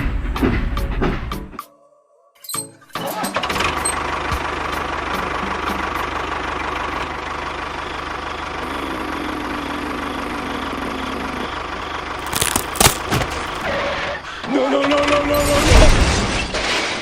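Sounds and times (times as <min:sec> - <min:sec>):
tractor engine idling: 0:03.4 - 0:14.6.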